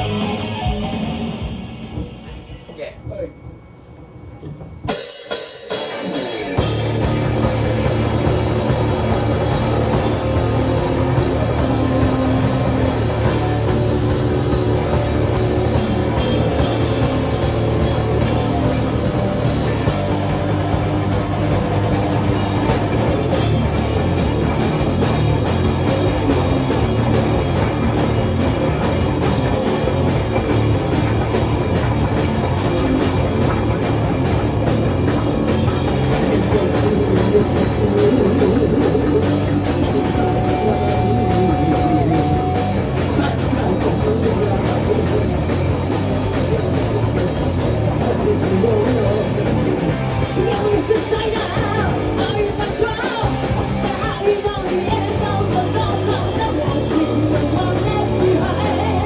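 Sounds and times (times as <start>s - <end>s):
drum hits: 0.0s - 3.7s
rock band playing: 0.0s - 59.0s.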